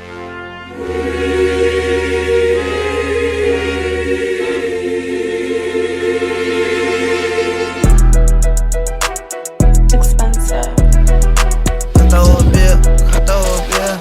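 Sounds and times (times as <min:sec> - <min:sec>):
sustained choir-like chord: 0:00.0 - 0:08.9
deep bass note: 0:09.8 - 0:13.5.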